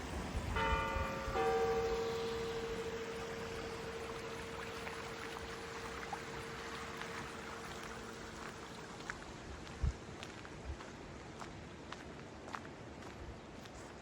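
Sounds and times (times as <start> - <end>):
running water: 0.0 - 10.4
church bell hum: 0.4 - 7.6.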